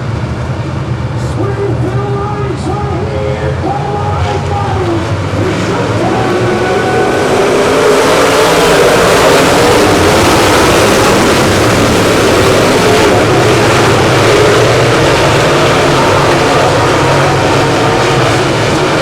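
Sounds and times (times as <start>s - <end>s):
race car engines: 0.0s - 19.0s.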